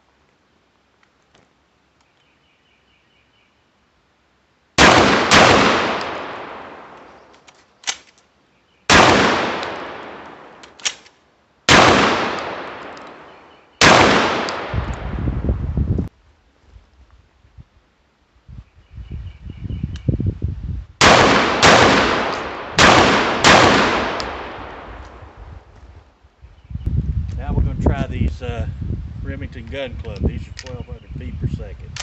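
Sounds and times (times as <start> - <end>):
shotgun firing: 4.8 - 7.0, 8.9 - 11.0, 11.7 - 15.1, 21.0 - 25.0
short clicks: 7.0 - 8.3.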